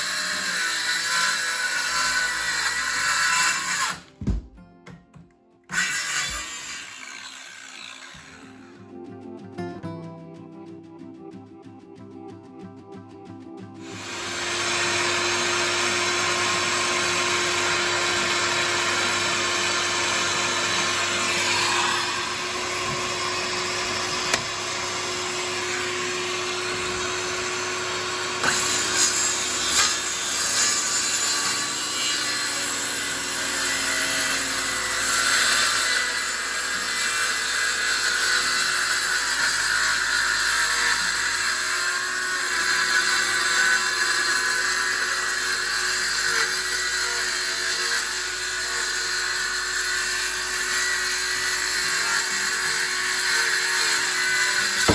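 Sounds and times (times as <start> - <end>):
knocks: 4.1 - 5.3
power tool motor running: 5.7 - 8.8, 13.8 - 36.6, 51.2 - 54.9.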